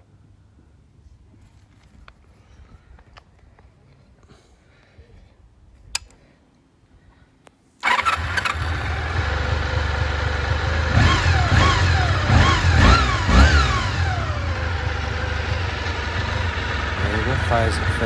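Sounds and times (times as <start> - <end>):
engine revving: 7.8 - 18.0
motorcycle engine starting and idling: 7.8 - 18.0.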